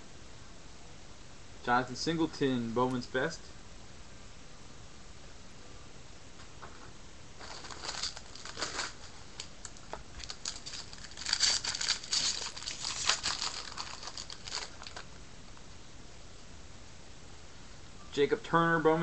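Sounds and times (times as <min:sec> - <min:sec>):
wrapper crinkling: 0:07.4 - 0:15.2.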